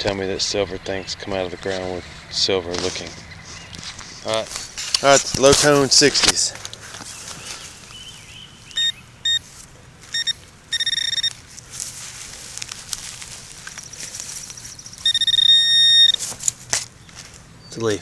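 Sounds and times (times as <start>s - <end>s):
metal detector beeping: 8.8s - 9.5s, 10.1s - 11.4s, 13.8s - 16.2s.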